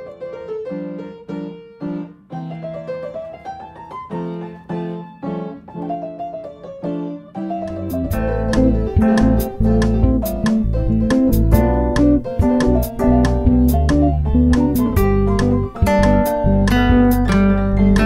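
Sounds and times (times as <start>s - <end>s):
piano chords: 0.0s - 18.0s.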